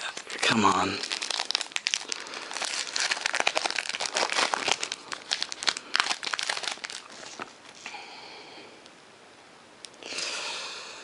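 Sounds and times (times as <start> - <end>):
wrapper crinkling and tearing: 0.0 - 7.9.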